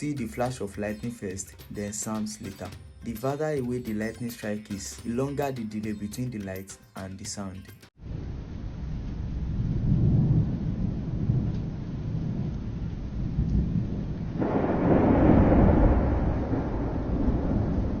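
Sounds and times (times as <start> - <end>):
thunder rumbling and cracking: 8.0 - 18.0.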